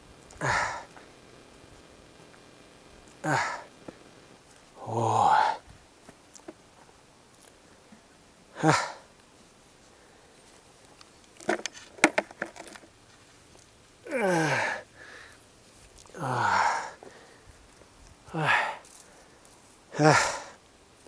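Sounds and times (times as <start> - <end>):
man coughing: 8.6 - 9.0.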